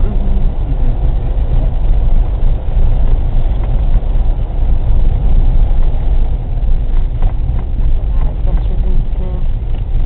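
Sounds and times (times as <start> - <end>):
car engine and road noise: 0.0 - 10.0.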